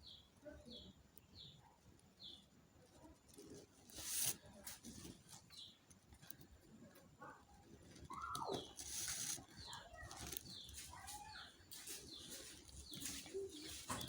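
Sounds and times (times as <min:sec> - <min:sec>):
cord rustling and swishing: 0:03.4 - 0:05.4, 0:08.0 - 0:14.0.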